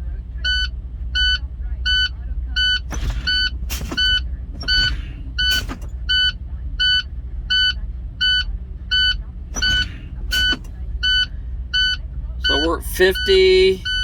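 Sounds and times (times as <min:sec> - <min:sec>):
diesel engine idling: 0:00.0 - 0:14.0
warning alarm beeping: 0:02.7 - 0:05.9, 0:09.6 - 0:14.0
air brake hiss: 0:02.9 - 0:06.0, 0:09.6 - 0:10.8.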